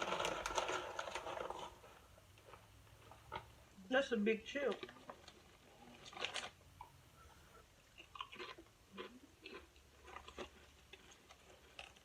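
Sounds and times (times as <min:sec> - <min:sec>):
chewing crisp chips: 0:04.7 - 0:06.9, 0:07.8 - 0:12.0.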